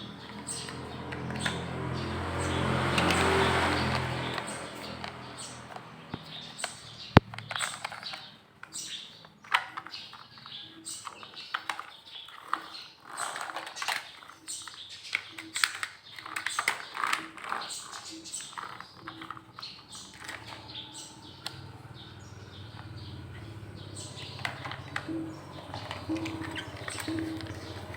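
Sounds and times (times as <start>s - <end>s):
birds chirping: 0.0s - 27.9s
plastic toys clattering: 0.0s - 27.9s.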